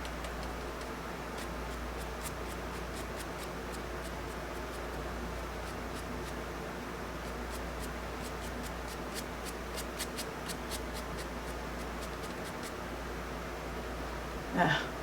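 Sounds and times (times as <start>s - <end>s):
drawing tool scratching paper: 7.3s - 12.8s.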